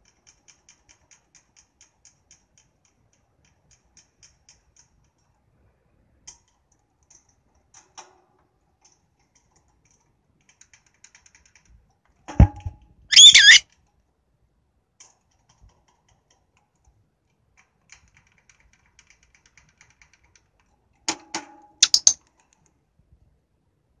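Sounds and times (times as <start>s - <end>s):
light clicks and taps: 0.0s - 12.9s, 15.0s - 22.8s
thump: 12.3s - 12.8s
lovebird squawking: 13.1s - 13.6s, 21.8s - 22.2s.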